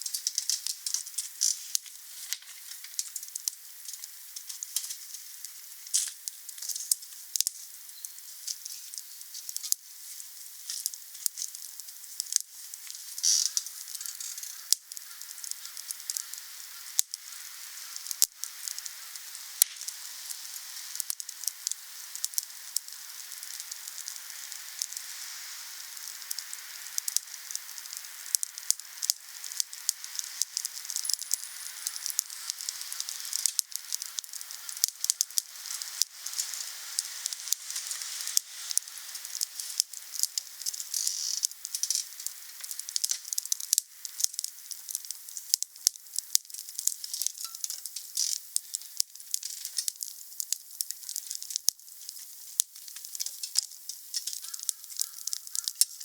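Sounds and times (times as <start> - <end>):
wood bonfire crackling: 0.0 - 56.0.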